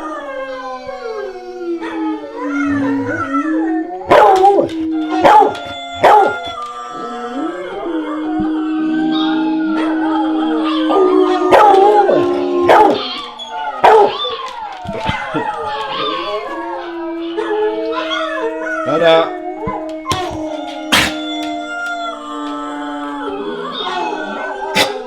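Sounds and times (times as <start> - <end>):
dogs howling through speaker: 0.0 - 25.0
dog barks and yips: 4.1 - 6.6, 11.5 - 16.2, 20.1 - 21.2, 24.8 - 25.0.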